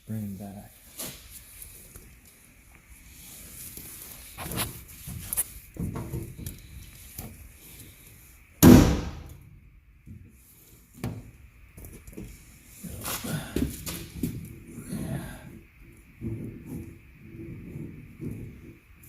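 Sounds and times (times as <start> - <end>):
loud bang: 8.6 - 9.3.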